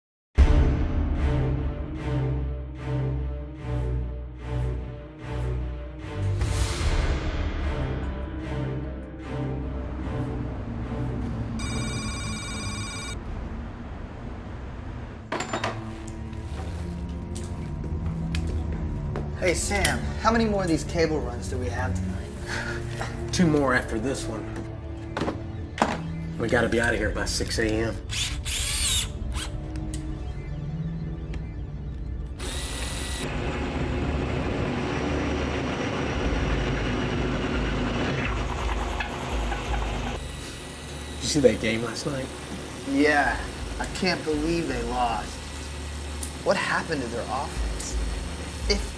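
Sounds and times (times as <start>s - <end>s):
telephone ringing: 11.6s - 13.2s
power drill boring into wall: 28.1s - 29.6s.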